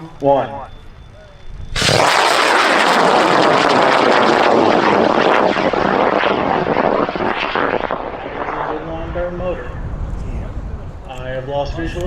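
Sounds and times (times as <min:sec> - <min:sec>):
rocket motor roaring: 0:01.4 - 0:11.0.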